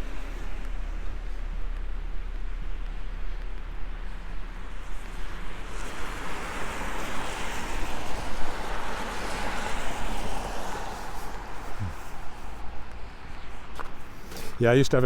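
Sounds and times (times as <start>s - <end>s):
tyre hiss on wet street: 4.0s - 14.8s.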